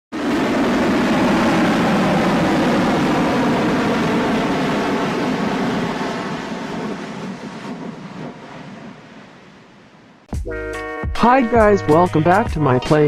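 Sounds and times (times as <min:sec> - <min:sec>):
aircraft engine rumble: 0:00.2 - 0:10.3.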